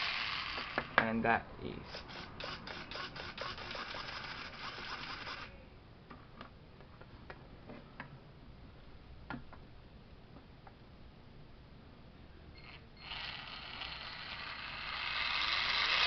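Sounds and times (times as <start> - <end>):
rc truck gears whirring: 0.0 - 0.9, 2.0 - 5.5, 12.6 - 16.0.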